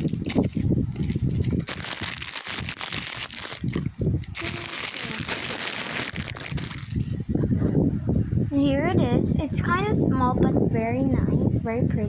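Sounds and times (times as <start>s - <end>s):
plastic packaging crinkling: 0.0s - 7.2s.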